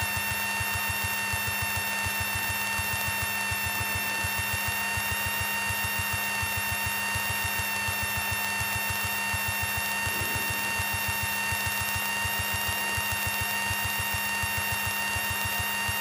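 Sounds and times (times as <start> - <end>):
high-pitched whine: 9.0 - 16.0
aircraft engine and propeller droning: 10.0 - 12.6.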